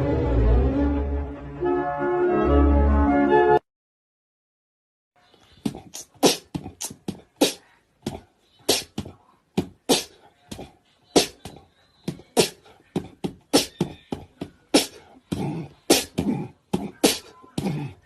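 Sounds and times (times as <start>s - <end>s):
sharp beatbox-like bursts: 5.6s - 10.6s, 11.2s - 17.8s.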